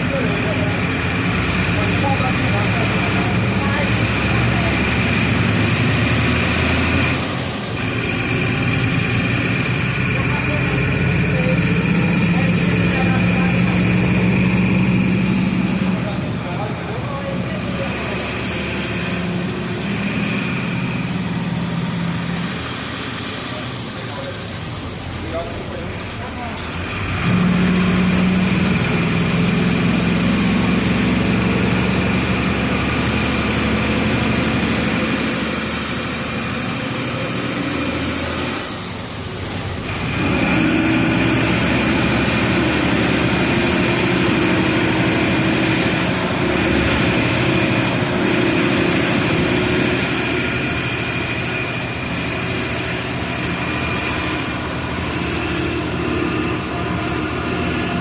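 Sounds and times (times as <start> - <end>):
bus diesel engine running: 0.0 - 58.0.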